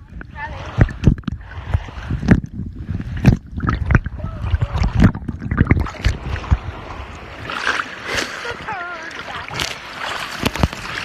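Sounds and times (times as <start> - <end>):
sea water sloshing and splashing: 0.0 - 11.0.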